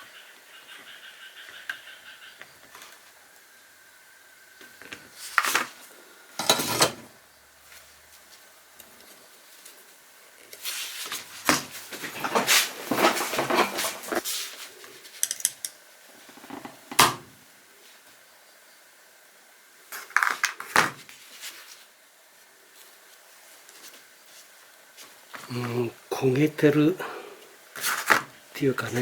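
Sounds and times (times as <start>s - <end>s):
light fixture parts clattering: 11.6s - 14.2s.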